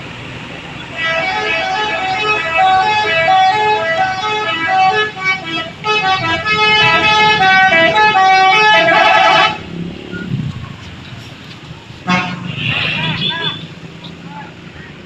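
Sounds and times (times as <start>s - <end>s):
multi-tone bus horn melody: 0.8s - 9.7s, 12.0s - 13.8s.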